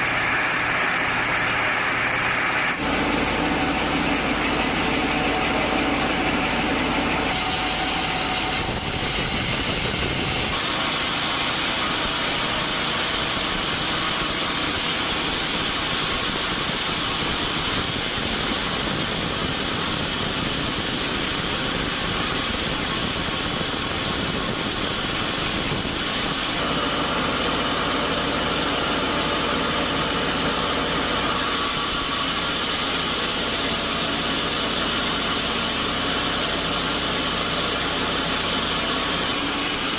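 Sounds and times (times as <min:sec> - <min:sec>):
woodworking machinery running: 0:00.0 - 0:39.9.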